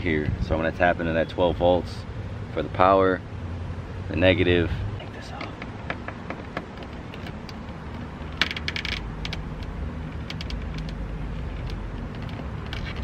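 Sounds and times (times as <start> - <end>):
small parts clicking and rattling: 5.4 - 13.0.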